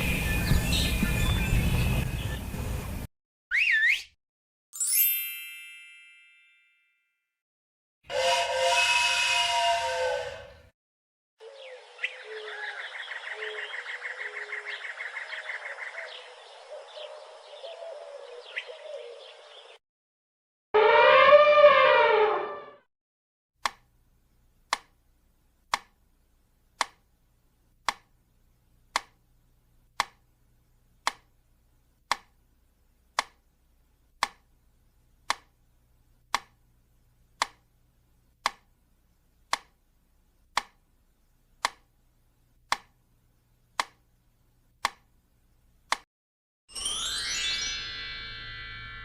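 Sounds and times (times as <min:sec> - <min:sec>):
elephant trumpeting: 0:08.1 - 0:10.6, 0:20.8 - 0:22.8.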